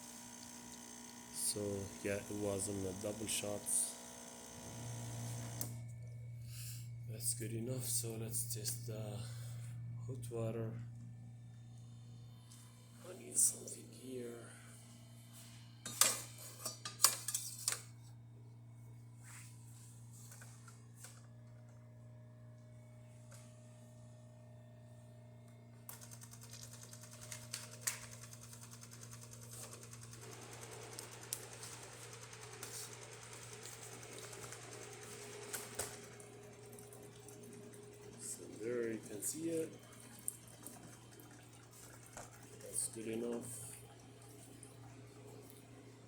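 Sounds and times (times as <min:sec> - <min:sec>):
faint steady hum: 0:04.6 - 0:30.2.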